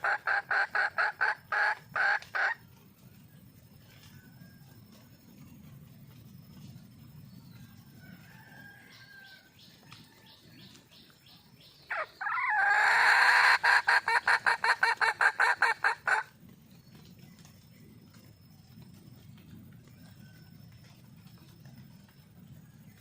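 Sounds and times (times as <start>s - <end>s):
hen cackling: 0.0s - 2.6s, 11.9s - 16.3s
hen clucking: 0.0s - 2.6s, 11.9s - 16.3s.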